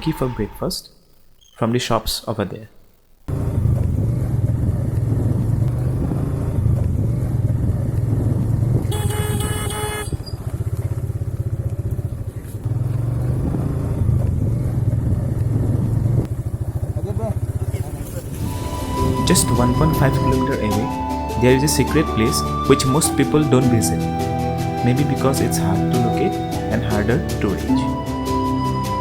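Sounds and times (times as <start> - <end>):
motorcycle engine rumble: 3.3 - 28.0
vehicle horn: 8.8 - 10.2.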